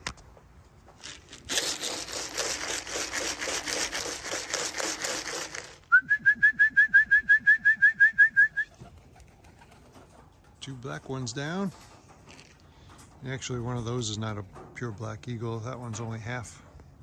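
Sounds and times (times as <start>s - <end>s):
pigeon wings flapping: 0.8s - 5.9s, 8.5s - 10.6s
short whistle-like chirps: 5.9s - 8.8s.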